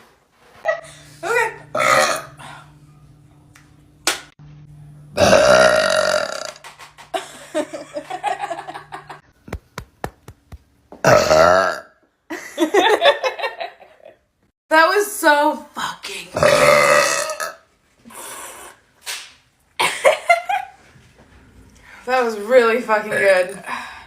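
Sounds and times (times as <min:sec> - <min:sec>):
woman burping loudly: 0:01.7 - 0:02.4, 0:05.2 - 0:06.6, 0:11.0 - 0:12.0, 0:16.4 - 0:17.6.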